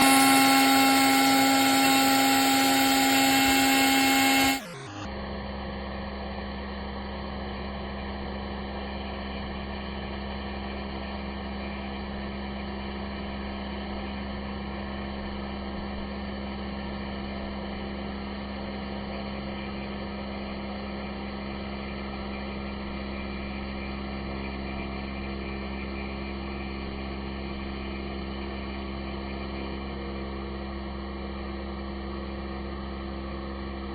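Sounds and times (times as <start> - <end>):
router spindle whining: 0.0 - 5.1
dull machine hum: 0.0 - 5.3.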